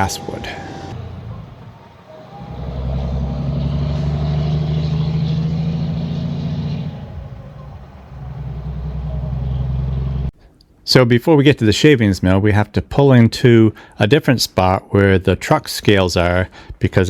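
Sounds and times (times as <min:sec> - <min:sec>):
truck diesel engine droning: 0:00.0 - 0:10.3.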